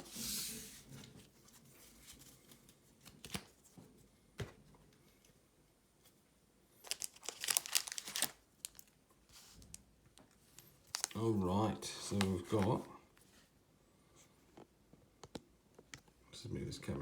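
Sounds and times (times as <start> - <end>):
foil wrapper crinkling: 6.8 - 9.8, 10.4 - 11.3.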